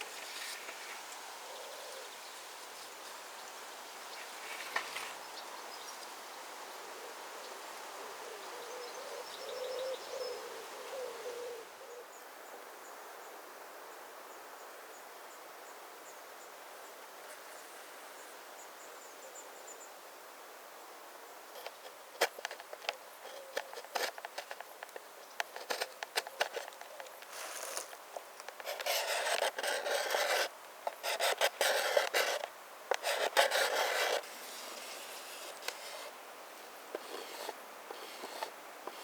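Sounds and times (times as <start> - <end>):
knife scraping wooden board: 28.6 - 36.1, 37.0 - 39.0.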